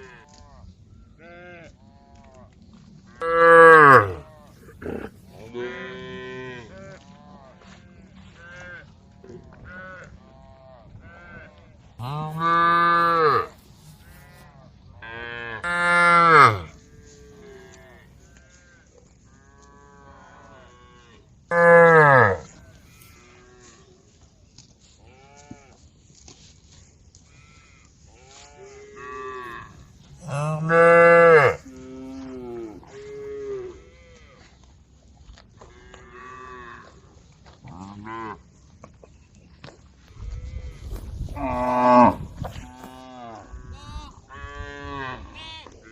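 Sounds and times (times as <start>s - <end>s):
cow mooing loudly: 3.2s - 6.8s, 12.0s - 13.6s, 15.1s - 16.8s, 21.5s - 22.5s, 29.0s - 33.8s, 40.7s - 43.5s
fainter moos from cattle: 3.2s - 7.6s.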